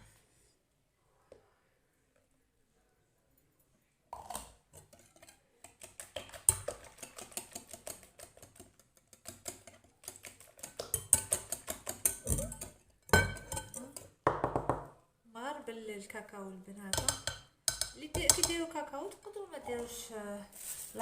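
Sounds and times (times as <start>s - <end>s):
wire whisk beating batter: 4.8s - 14.2s, 16.9s - 20.0s.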